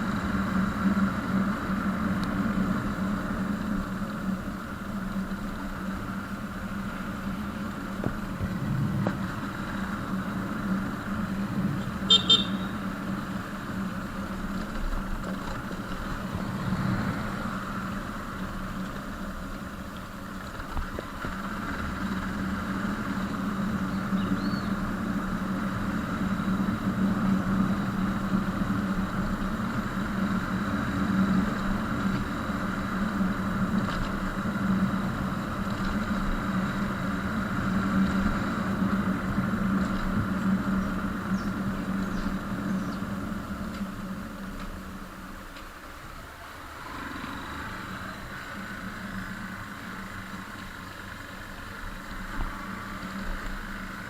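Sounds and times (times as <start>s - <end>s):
motorcycle engine running: 0.0s - 54.0s
short high beeps: 12.1s - 12.7s.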